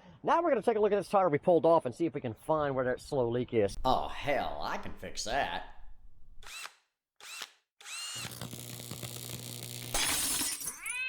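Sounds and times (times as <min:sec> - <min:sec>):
power tool motor whirring: 0:06.4 - 0:10.0.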